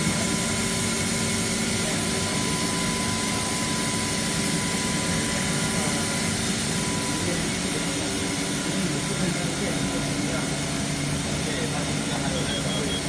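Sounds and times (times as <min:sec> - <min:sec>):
equipment hum and fan noise: 0:00.0 - 0:13.0.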